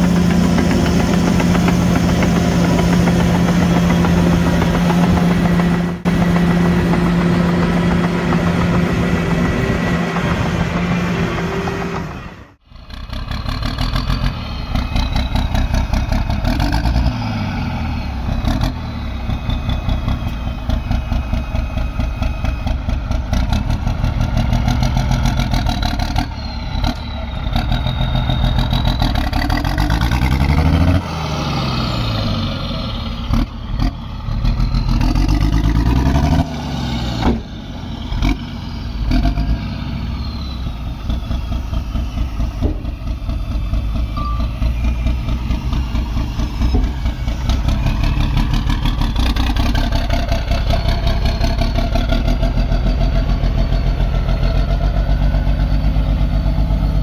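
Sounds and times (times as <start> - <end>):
heavy diesel machinery working: 0.0 - 57.0.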